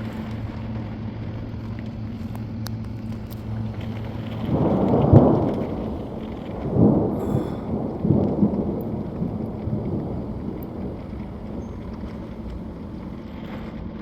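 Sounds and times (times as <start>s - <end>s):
steady rain: 0.0s - 14.0s
thunder rolling: 2.9s - 13.8s.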